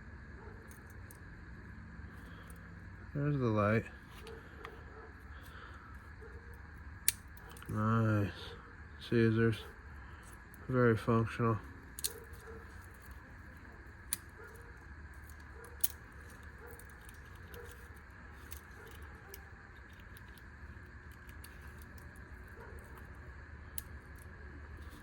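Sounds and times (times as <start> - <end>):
steady low hum: 0.0 - 25.0
metal tool clicks: 12.0 - 12.4.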